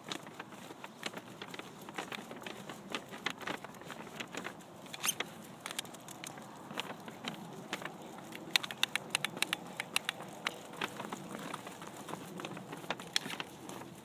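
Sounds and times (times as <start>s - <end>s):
dog claws tapping on floor: 5.6s - 13.5s.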